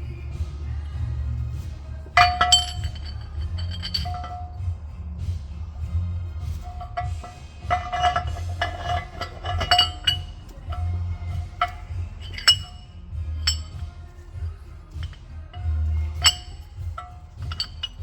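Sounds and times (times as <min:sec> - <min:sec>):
background music: 0:00.0 - 0:18.0
metal parts clinking: 0:02.1 - 0:04.6, 0:06.6 - 0:13.9, 0:14.9 - 0:18.0.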